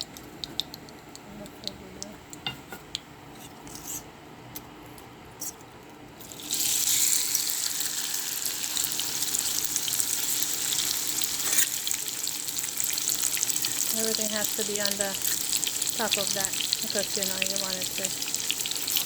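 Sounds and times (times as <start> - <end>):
batter sizzling in hot oil: 6.2 - 19.0.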